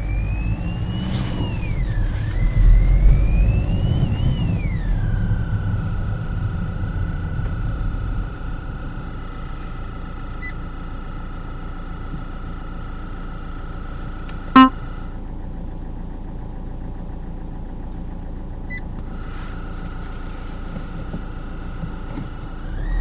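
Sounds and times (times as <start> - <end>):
high-pitched electronic whine: 0.0 - 15.2, 19.1 - 23.0
low car cabin rumble: 0.0 - 23.0
short loud beep: 14.5 - 14.8.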